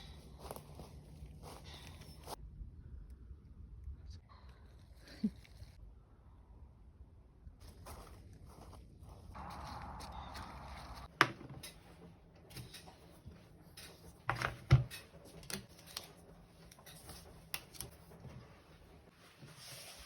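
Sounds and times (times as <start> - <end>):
soft rustle: 18.3 - 20.0.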